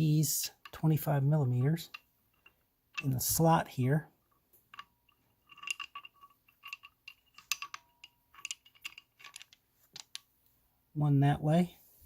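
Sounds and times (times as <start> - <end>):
metal dies clinking: 4.7 - 10.2.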